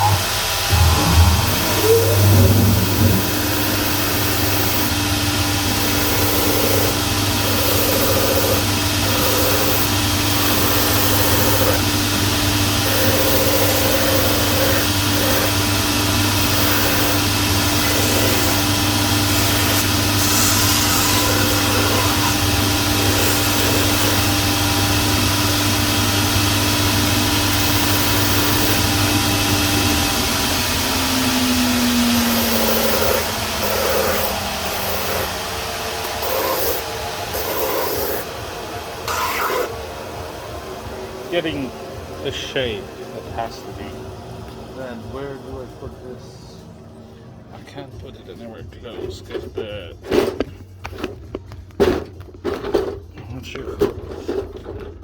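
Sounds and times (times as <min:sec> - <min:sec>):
edge trimmer motor running: 0:02.1 - 0:38.4, 0:39.0 - 0:39.8.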